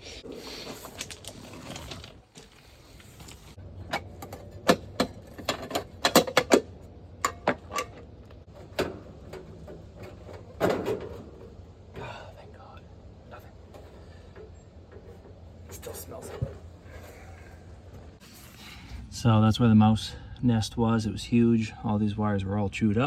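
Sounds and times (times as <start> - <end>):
metal clicks and knocks: 3.9 - 11.4.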